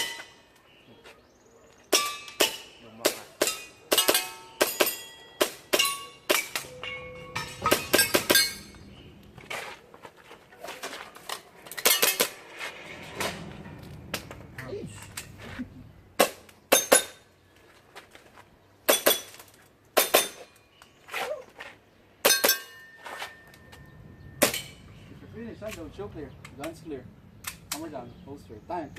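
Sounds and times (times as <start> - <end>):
metallic ringing ping: 3.5 - 9.1.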